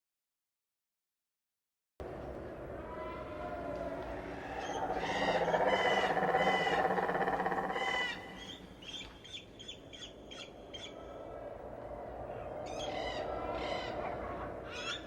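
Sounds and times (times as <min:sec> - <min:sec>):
loud harsh animal call: 0:04.4 - 0:08.8.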